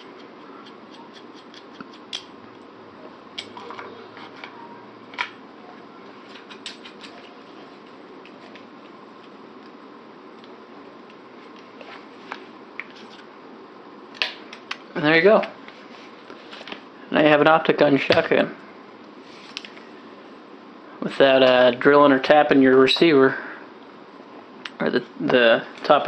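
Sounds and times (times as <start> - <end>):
steady background hiss: 0.0 - 26.0.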